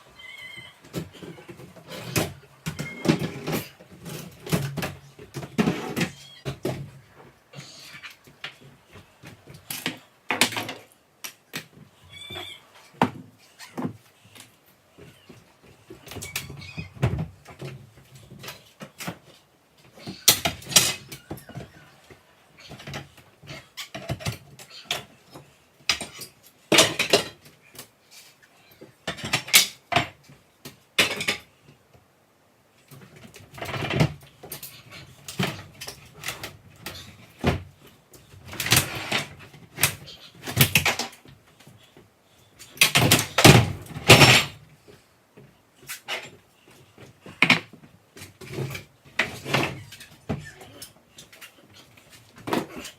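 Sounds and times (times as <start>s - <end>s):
wood and metal knocks and bangs: 0.8s - 7.4s, 15.0s - 27.5s, 42.8s - 44.6s.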